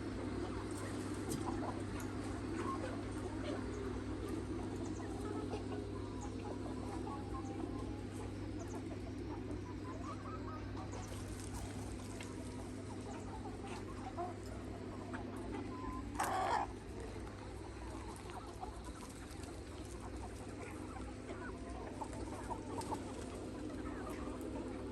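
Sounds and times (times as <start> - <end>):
chickens clucking: 0.0 - 24.9
steady low hum: 0.0 - 24.9.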